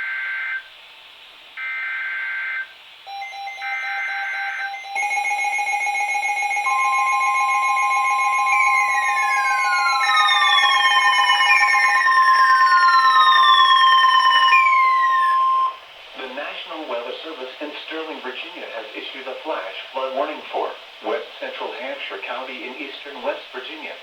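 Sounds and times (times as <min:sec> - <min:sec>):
steady electronic alert tones: 0:03.1 - 0:15.8
screechy digital header bursts: 0:05.0 - 0:15.8
falling whistle sweeps: 0:06.0 - 0:15.9.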